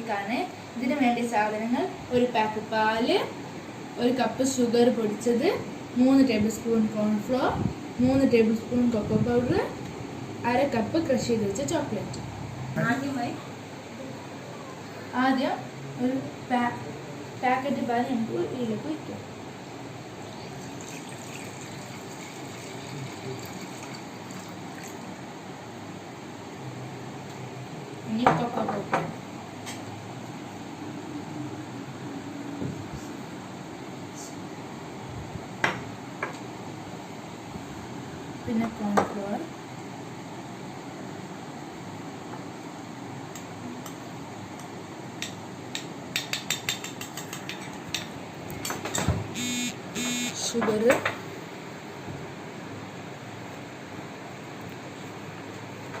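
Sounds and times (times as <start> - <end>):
steady background hiss: 0.0 - 56.0
milk pouring into a pan: 20.6 - 25.0
spoon clicking against kitchenware: 45.2 - 48.1.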